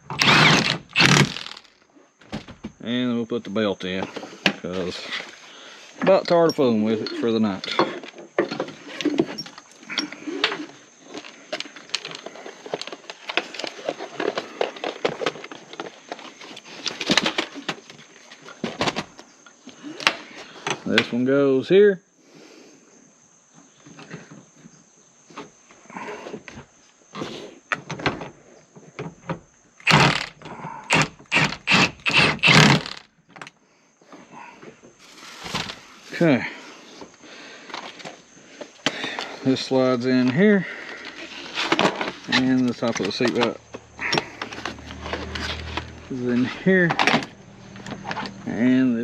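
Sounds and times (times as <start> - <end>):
impact wrench bursts: 0.0 - 1.7, 29.8 - 33.1
parts clicking and knocking: 46.9 - 48.4.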